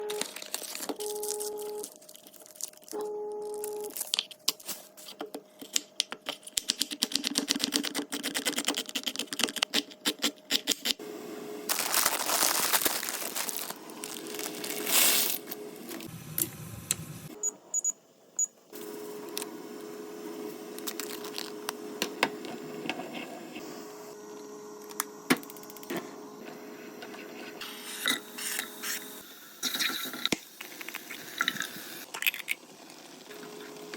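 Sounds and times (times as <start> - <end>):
packaging rustling and tearing: 0.1 - 5.1, 11.7 - 16.1, 20.8 - 21.7.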